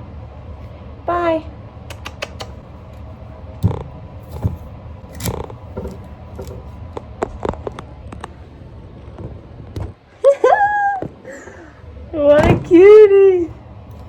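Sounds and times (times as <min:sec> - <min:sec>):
small clicks and knocks: 0:01.9 - 0:08.4.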